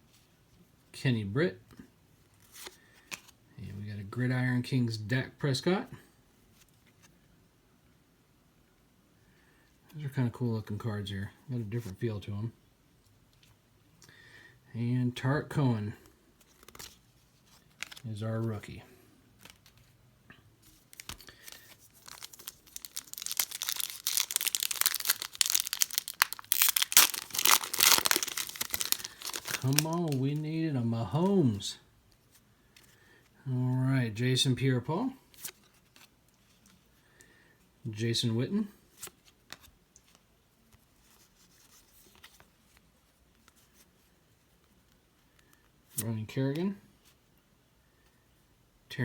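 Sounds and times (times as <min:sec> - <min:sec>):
trading cards clicking and rustling: 0:16.4 - 0:18.6, 0:19.4 - 0:19.9, 0:20.6 - 0:30.4
wrapper tearing and crinkling: 0:20.9 - 0:30.4.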